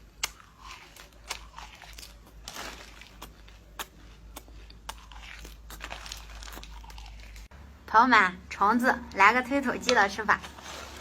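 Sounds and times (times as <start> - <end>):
person crunching insects: 0.0 - 7.5
soft chewing noise: 0.0 - 7.5.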